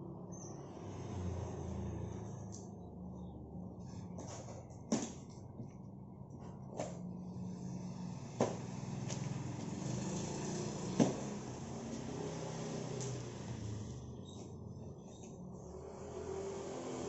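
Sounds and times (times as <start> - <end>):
engine running: 6.8 - 14.4.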